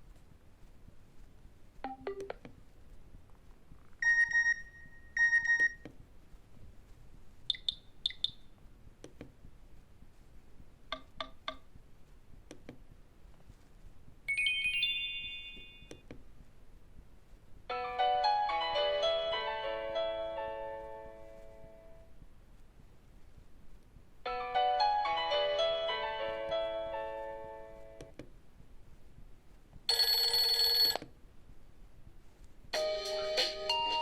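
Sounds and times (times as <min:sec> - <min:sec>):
short electronic beeps: 0:07.5 - 0:08.4
piano-like ringtone melody: 0:14.3 - 0:16.0, 0:17.7 - 0:21.8, 0:24.3 - 0:28.1, 0:32.8 - 0:34.0.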